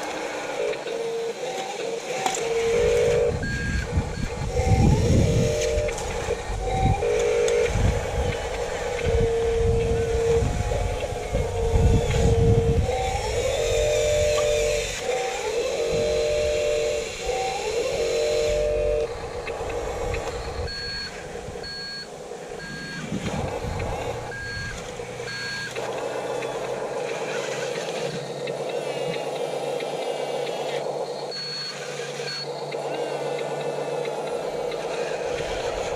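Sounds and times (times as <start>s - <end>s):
toy vehicle motor whine: 0.0s - 35.9s
short reversing beeps: 2.4s - 14.9s, 15.7s - 19.2s, 20.1s - 25.8s, 31.2s - 32.6s.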